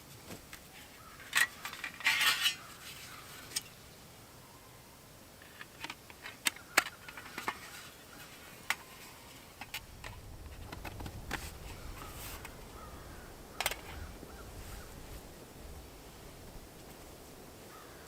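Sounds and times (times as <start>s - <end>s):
cooking gear clicks and knocks: 1.2s - 2.7s, 5.4s - 7.9s, 13.6s - 14.0s.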